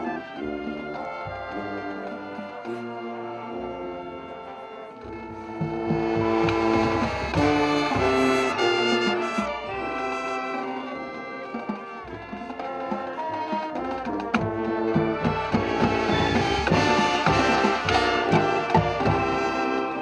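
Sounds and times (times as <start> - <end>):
brass and woodwinds chords: 0.0 - 20.0
marching drum strikes: 5.2 - 10.2, 11.6 - 19.9.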